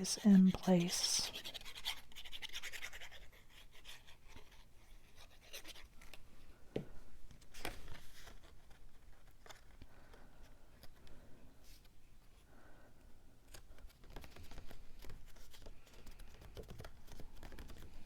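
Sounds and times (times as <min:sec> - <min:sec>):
paper rustling and scratching: 0:00.0 - 0:06.2, 0:07.4 - 0:10.2, 0:13.5 - 0:18.0.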